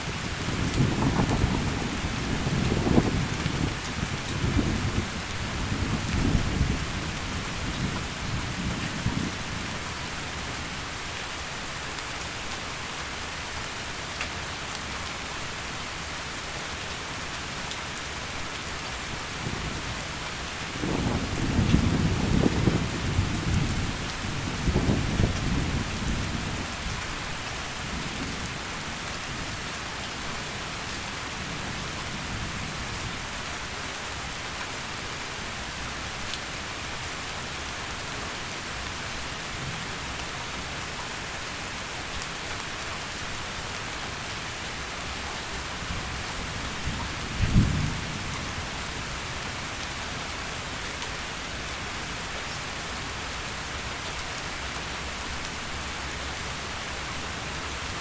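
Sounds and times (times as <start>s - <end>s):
low thunder rumble: 20.8s - 26.4s, 46.8s - 48.6s
sharp thunderclap: 47.4s - 48.1s.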